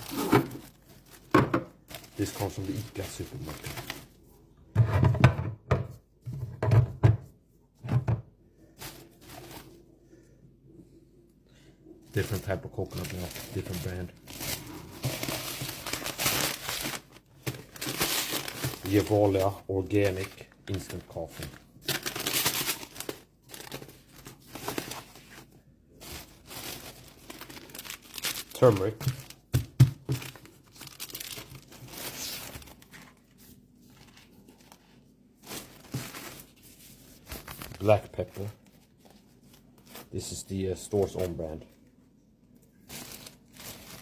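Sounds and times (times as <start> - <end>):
bag and packaging crinkling: 0.0 - 4.2, 12.2 - 41.7, 42.6 - 44.0
grocery items knocking on hard surface: 1.3 - 1.8, 4.7 - 8.3, 29.0 - 30.4.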